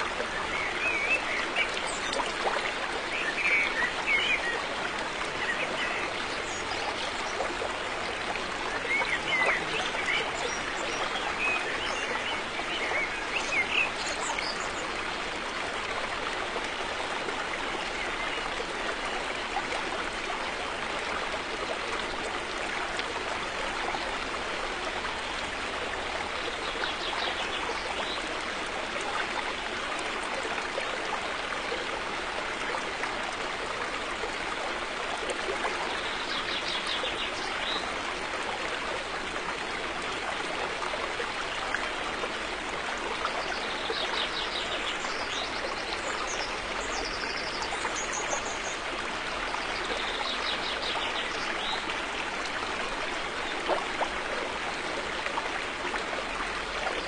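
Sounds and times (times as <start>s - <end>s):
river water rushing over stones: 0.0s - 57.0s.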